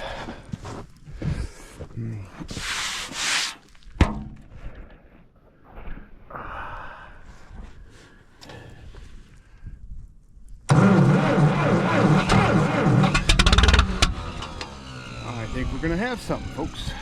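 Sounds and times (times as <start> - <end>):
rubbing and scraping handling noises: 2.4 - 4.0.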